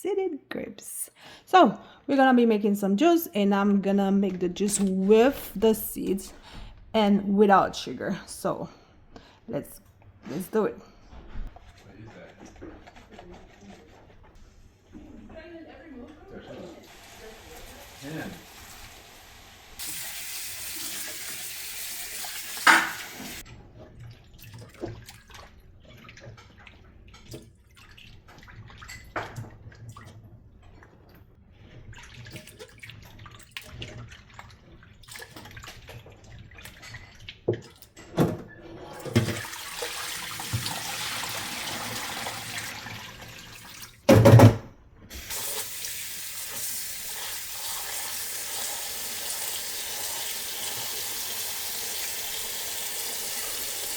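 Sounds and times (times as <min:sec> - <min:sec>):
tap running into sink: 0:22.2 - 0:23.4, 0:39.0 - 0:42.7.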